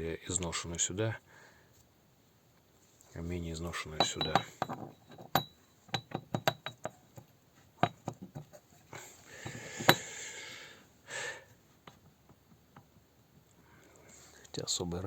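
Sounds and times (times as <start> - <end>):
metal scraping: 3.9 - 7.0
metal gears clinking: 4.0 - 6.9.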